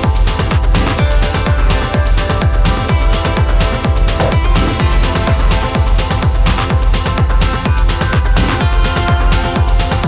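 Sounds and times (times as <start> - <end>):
four-on-the-floor kick drum: 0.0 - 10.0
sustained synth chords: 3.7 - 7.0.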